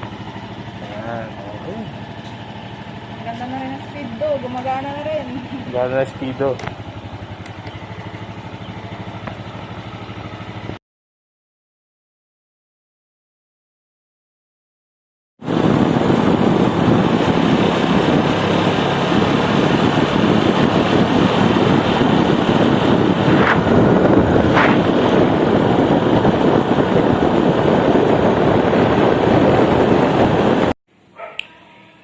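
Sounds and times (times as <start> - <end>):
road and engine noise: 0.0 - 10.8, 15.4 - 32.0
wind rushing over microphone: 15.4 - 30.8.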